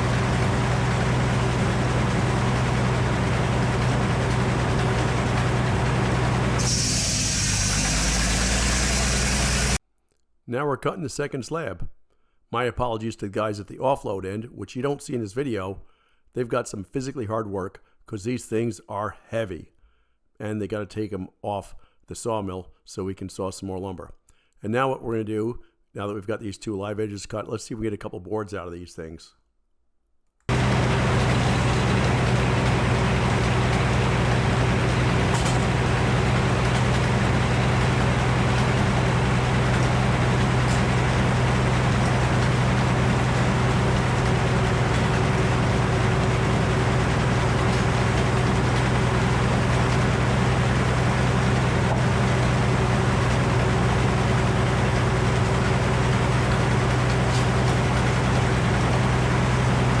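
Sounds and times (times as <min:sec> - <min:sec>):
sawmill low drone: 0:00.0 - 0:09.8, 0:30.5 - 1:00.0.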